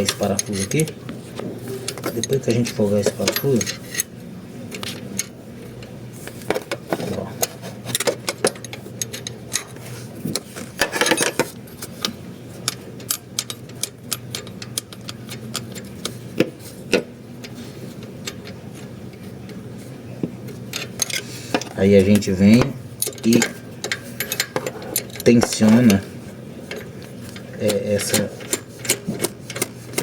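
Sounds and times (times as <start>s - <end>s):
hand tools clinking against metal: 1.9s - 3.8s, 23.0s - 26.0s.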